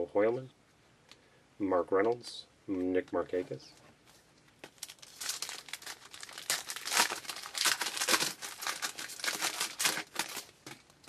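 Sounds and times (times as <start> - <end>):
plastic wrapper crinkling: 4.6 - 11.0.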